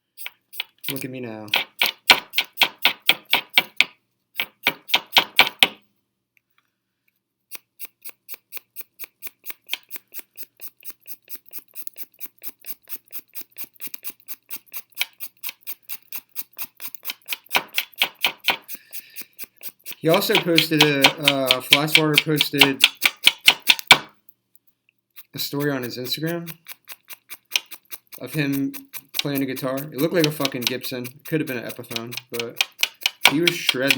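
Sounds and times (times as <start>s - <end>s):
rapid even clicking: 13.8s - 24.1s, 25.2s - 33.9s.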